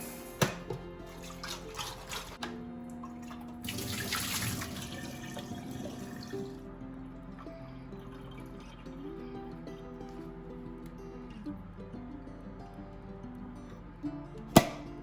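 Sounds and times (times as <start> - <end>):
tap water running into sink: 0.4 - 6.6.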